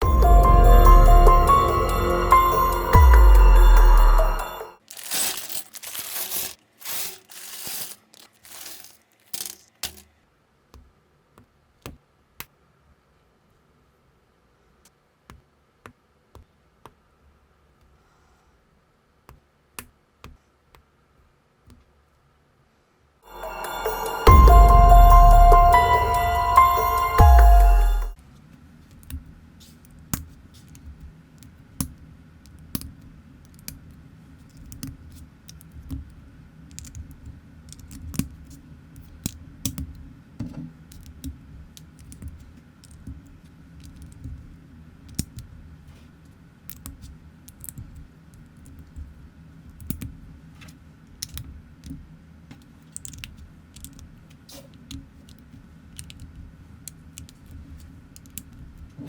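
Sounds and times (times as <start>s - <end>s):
plastic bricks clicking and rattling: 4.9s - 10.1s.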